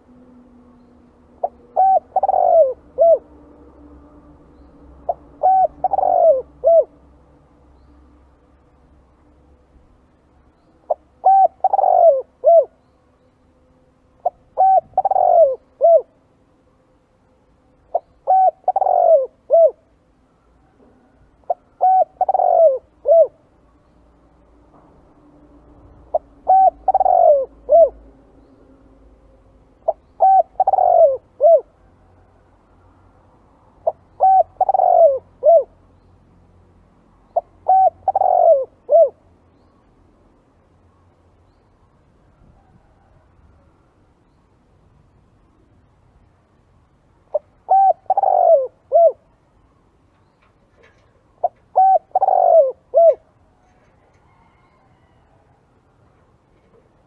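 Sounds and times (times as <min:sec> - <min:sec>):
dove cooing: 0:01.3 - 0:04.1, 0:04.9 - 0:07.0, 0:10.8 - 0:12.8, 0:14.2 - 0:16.2, 0:17.9 - 0:20.0, 0:20.7 - 0:23.5, 0:26.0 - 0:28.1, 0:29.8 - 0:31.8, 0:33.8 - 0:35.8, 0:37.3 - 0:39.2, 0:47.3 - 0:49.3, 0:50.7 - 0:55.3.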